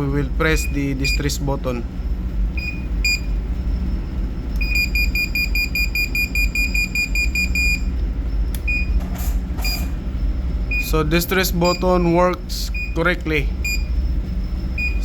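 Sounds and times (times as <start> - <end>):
steady low hum: 0.0 - 15.0
high-pitched beeps: 4.6 - 7.9.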